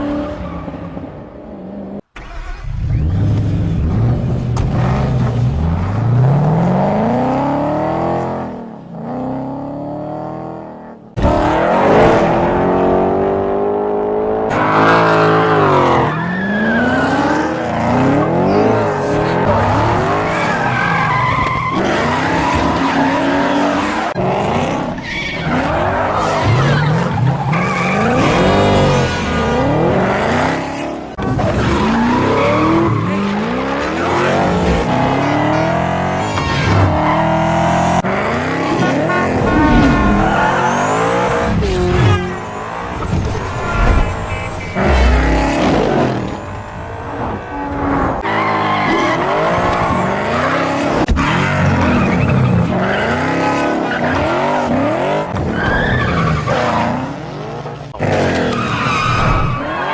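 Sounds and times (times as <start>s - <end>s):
car engine revving hard: 2.9s - 16.1s, 43.6s - 55.5s.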